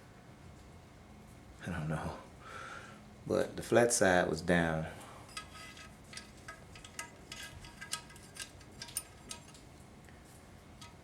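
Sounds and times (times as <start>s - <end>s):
small steel parts clinking: 5.3s - 9.7s.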